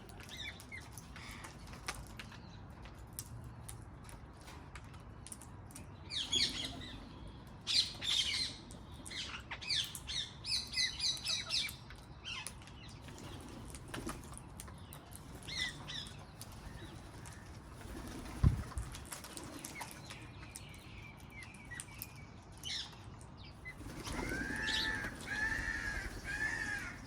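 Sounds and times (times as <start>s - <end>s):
parrots chattering shrilly: 24.1s - 27.0s.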